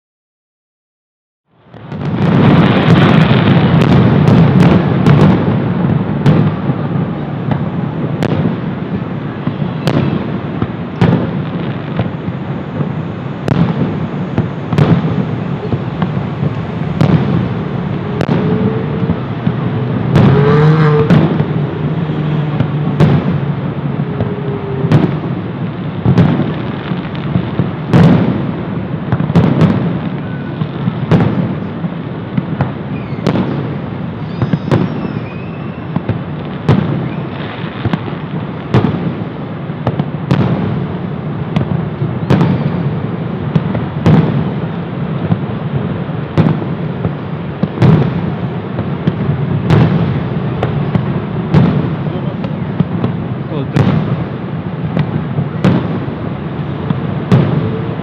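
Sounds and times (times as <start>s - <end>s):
fireworks bursting bangs: 1.6s - 58.0s
low rumble: 12.2s - 27.6s, 48.1s - 54.1s.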